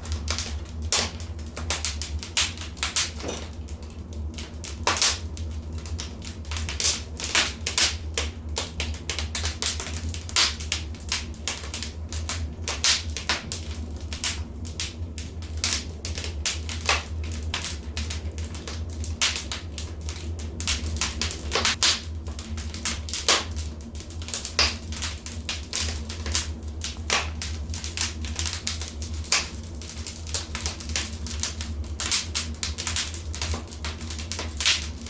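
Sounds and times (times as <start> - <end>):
wood fire crackling: 0.0 - 35.0.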